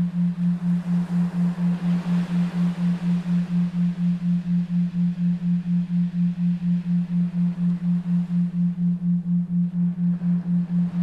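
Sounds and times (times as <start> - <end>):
pulsing low electronic tone: 0.0 - 11.0.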